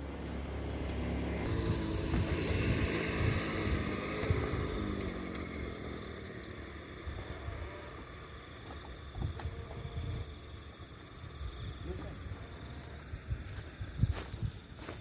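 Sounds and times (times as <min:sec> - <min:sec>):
small motor engine passing by: 0:00.0 - 0:10.6.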